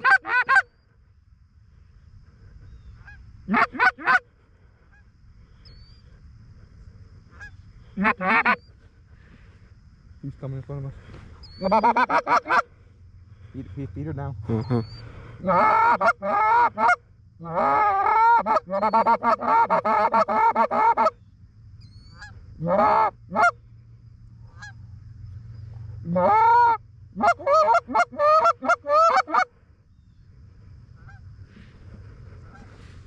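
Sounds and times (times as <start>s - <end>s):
goose honking and clucking: 0.0s - 0.7s, 3.0s - 4.3s, 7.4s - 8.7s, 11.4s - 12.8s, 14.7s - 21.2s, 22.0s - 23.6s, 24.5s - 24.8s, 26.0s - 29.5s, 31.0s - 33.0s.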